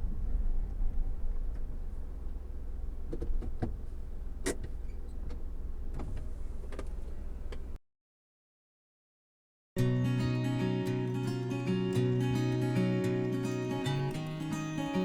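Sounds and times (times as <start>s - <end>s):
car rumbling on the move: 0.0s - 7.8s.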